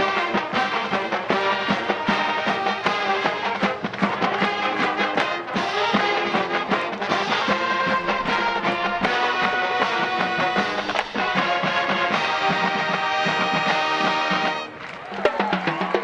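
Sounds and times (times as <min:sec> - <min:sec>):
brass section playing: 0:00.0 - 0:14.9
marching drums beat: 0:00.0 - 0:16.0.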